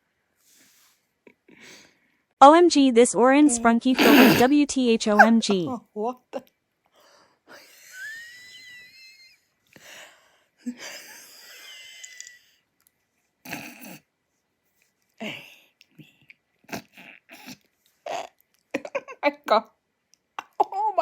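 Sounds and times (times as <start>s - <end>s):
girl laughing breathlessly: 4.0s - 4.5s, 5.1s - 5.6s.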